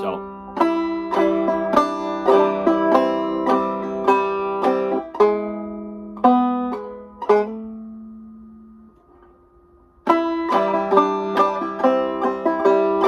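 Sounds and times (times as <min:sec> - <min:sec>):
banjo plucking and strumming: 0:00.0 - 0:13.0.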